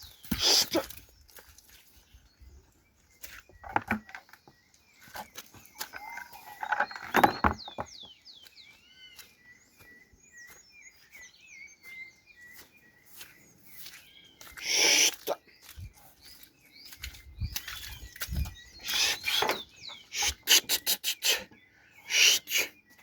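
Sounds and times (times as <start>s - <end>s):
small birds chirping: 0.0s - 23.0s
knocks and clatters: 6.6s - 8.0s.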